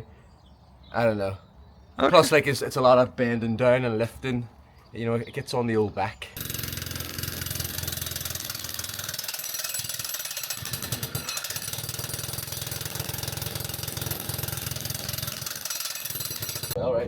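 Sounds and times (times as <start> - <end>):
demolition hammer chiselling concrete: 6.4 - 16.8.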